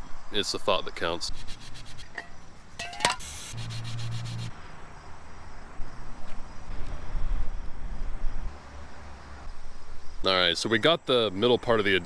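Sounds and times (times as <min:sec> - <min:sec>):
scratchy ticks: 0:01.3 - 0:02.3, 0:03.2 - 0:04.5.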